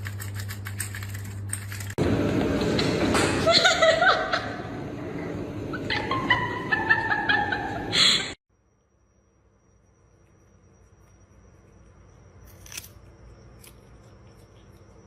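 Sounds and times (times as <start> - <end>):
people laughing: 3.3 - 4.7, 5.7 - 8.4.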